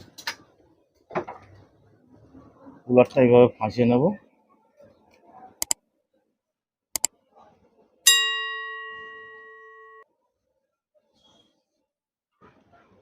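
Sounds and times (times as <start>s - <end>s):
bell-like metallic ring: 8.1s - 10.0s.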